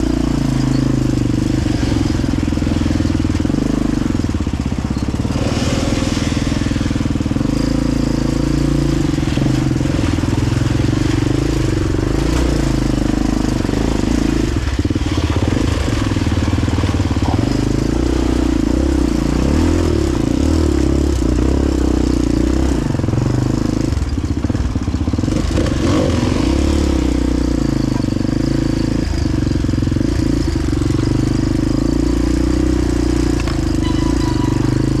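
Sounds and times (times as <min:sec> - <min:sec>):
dirt bike engine revving: 0:00.0 - 0:35.0.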